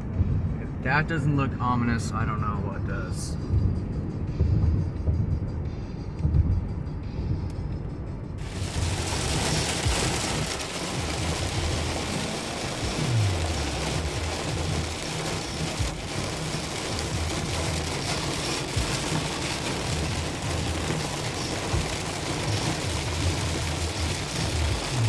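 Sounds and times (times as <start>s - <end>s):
car driving low rumble: 0.0s - 25.0s
heavy rain on car roof: 8.4s - 25.0s.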